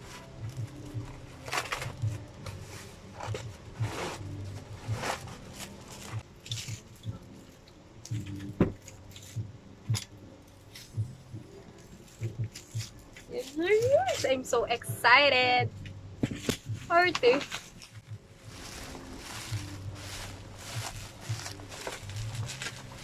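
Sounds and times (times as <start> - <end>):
packaging rustling and crinkling: 0.0 - 9.4, 16.3 - 23.0.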